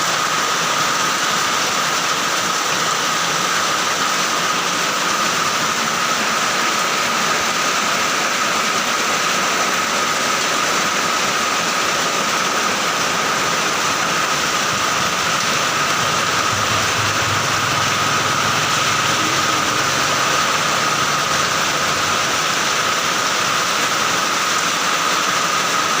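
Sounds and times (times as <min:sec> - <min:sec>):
heavy rain hissing: 0:00.0 - 0:26.0
thin high tone: 0:13.2 - 0:22.5
low rumble: 0:14.8 - 0:19.7.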